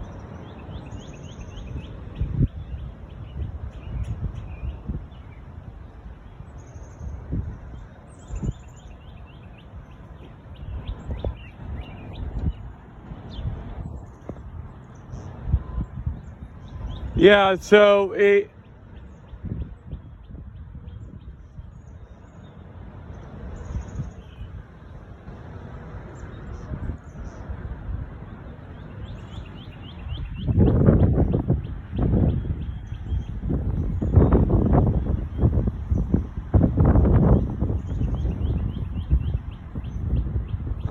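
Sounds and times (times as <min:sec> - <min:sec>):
gusty wind buffeting microphone: 0:00.0 - 0:40.9
bird chirping: 0:08.1 - 0:12.7, 0:28.7 - 0:34.4.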